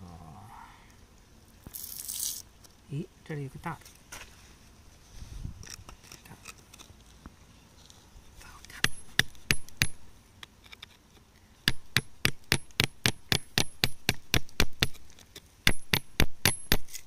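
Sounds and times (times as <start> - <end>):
hammer chipping rock: 8.8 - 10.0, 11.7 - 17.0.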